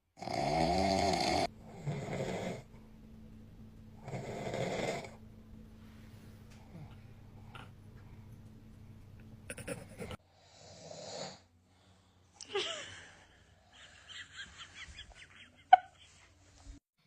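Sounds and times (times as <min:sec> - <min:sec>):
man snoring: 0:00.2 - 0:02.7, 0:04.0 - 0:05.2, 0:10.4 - 0:11.5.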